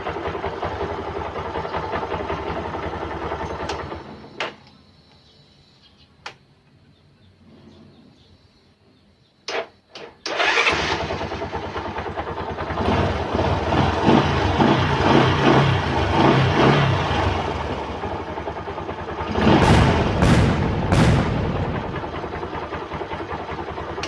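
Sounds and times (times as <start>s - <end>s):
motorcycle engine starting and running: 0.0s - 4.6s, 9.5s - 24.0s.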